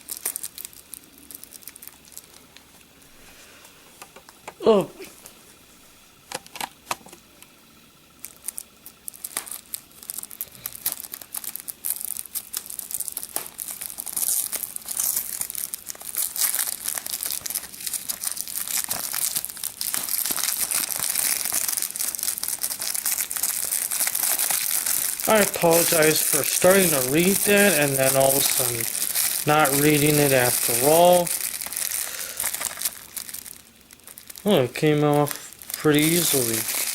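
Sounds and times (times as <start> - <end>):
plastic packaging crinkling and tearing: 0.0 - 2.9, 8.2 - 36.9.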